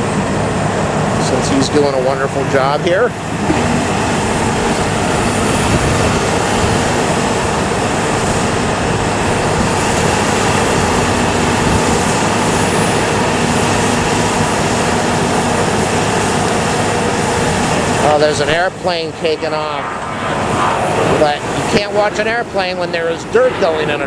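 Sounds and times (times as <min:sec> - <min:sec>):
jet airliner roaring: 0:00.0 - 0:24.0.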